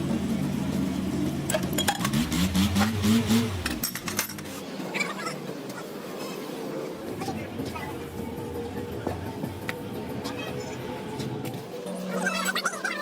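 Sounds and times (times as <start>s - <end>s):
engine humming: 0.0s - 6.2s.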